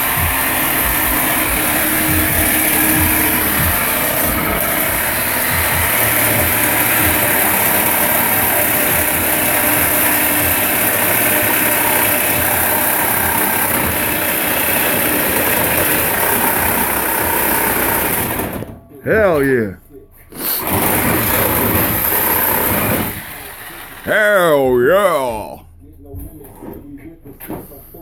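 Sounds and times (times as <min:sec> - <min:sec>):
reciprocating saw cutting steel pipe: 0:00.0 - 0:18.4.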